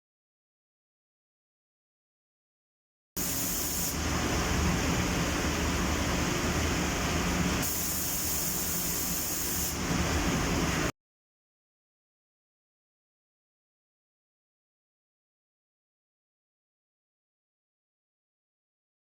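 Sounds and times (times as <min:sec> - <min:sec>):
paint spray gun hissing: 0:03.2 - 0:10.8
low machine hum: 0:03.9 - 0:07.6.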